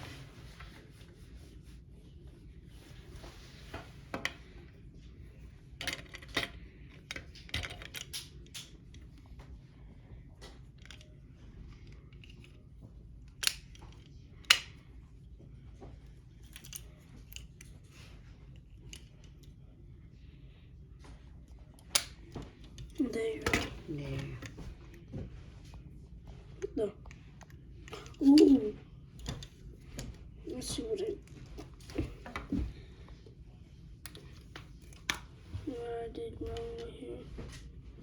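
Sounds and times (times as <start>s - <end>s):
plastic parts clicking: 5.8s - 8.7s, 13.3s - 14.8s
sharp plastic snaps: 13.4s - 14.9s, 21.8s - 22.4s.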